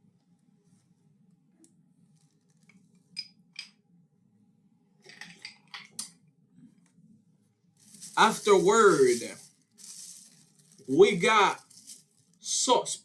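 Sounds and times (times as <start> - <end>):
rustling of food containers: 7.8 - 12.4.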